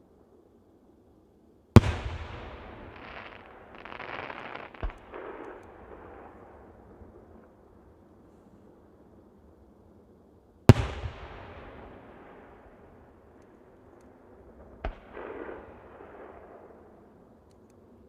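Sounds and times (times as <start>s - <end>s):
fireworks bangs echoing: 1.8s - 6.9s, 10.7s - 12.8s, 14.7s - 16.8s.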